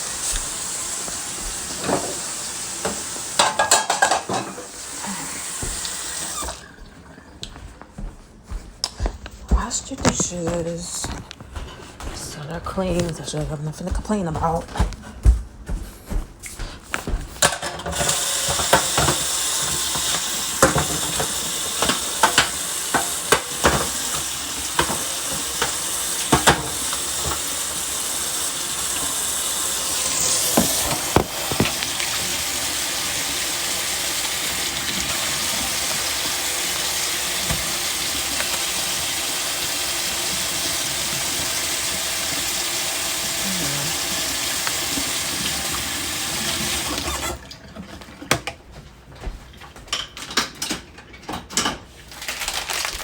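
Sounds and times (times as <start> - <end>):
tap water running into sink: 0.0 - 6.8, 17.8 - 48.5
dishes clattering: 1.7 - 5.9, 17.4 - 27.5.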